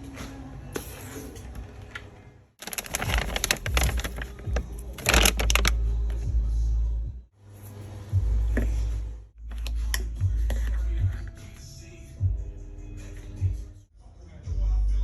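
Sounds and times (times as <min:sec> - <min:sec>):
sharp clicks and rattles: 0:02.6 - 0:05.7.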